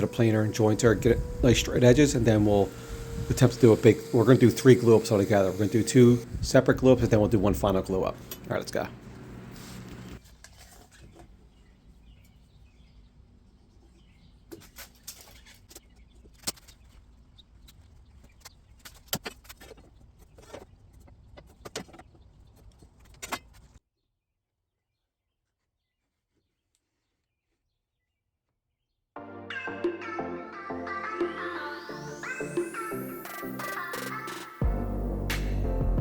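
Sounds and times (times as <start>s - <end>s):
low steady hum: 0.0s - 10.2s.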